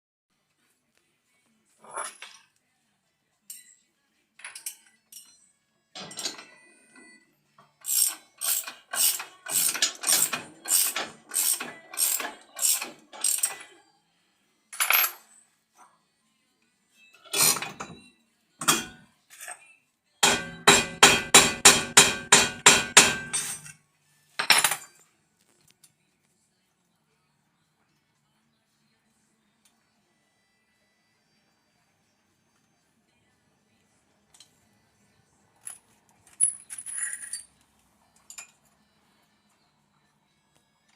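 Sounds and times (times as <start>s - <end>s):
ratchet wrench clicking: 7.8s - 13.6s.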